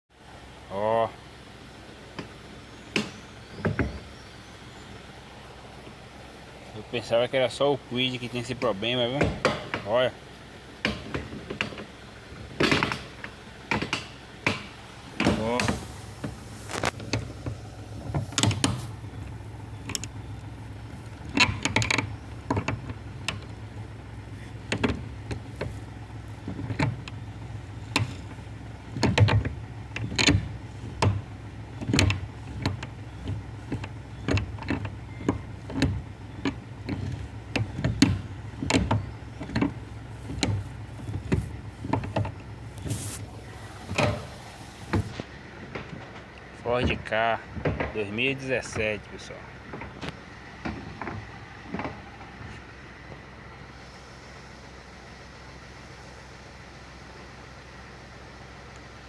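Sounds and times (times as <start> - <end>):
steady low hum: 0.2 - 47.6
steering clunking and knocking: 0.4 - 54.0.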